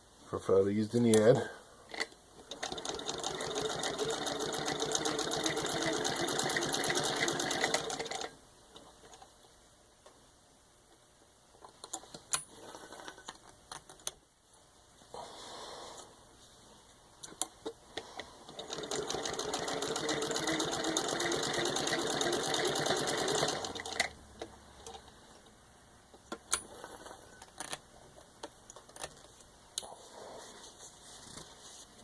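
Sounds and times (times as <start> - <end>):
sewing machine clattering: 2.5 - 8.3, 18.5 - 24.1.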